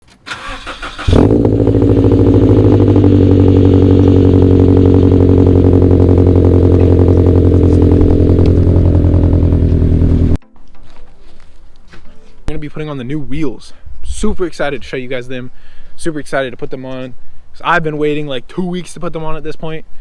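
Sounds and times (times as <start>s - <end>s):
car engine starting and idling: 0.2s - 10.4s.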